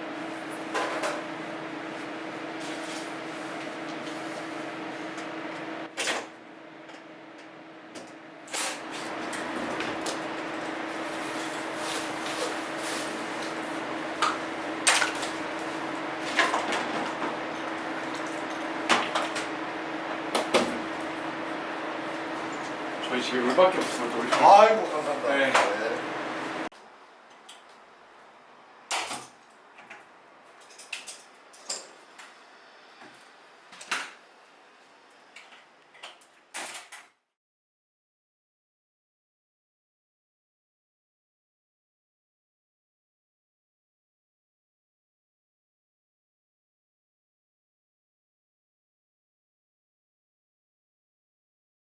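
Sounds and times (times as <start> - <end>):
steady hum and hiss: 0.0 - 36.0.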